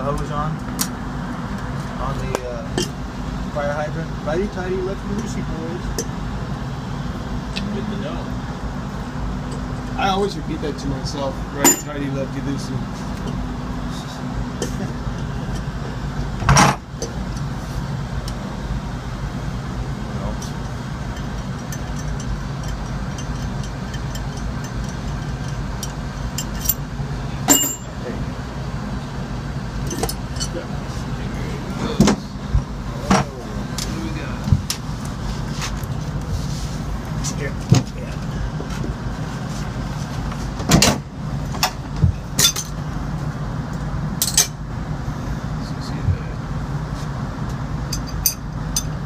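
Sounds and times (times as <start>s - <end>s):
machinery hum: 0.0s - 49.0s
metal tools clinking: 11.6s - 12.1s, 20.5s - 26.8s, 27.5s - 28.0s, 29.9s - 30.6s, 42.4s - 42.8s, 47.9s - 49.0s.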